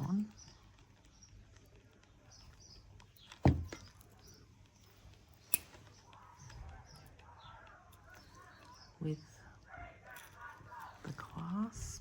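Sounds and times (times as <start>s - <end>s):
object set down knock: 3.4s - 3.8s.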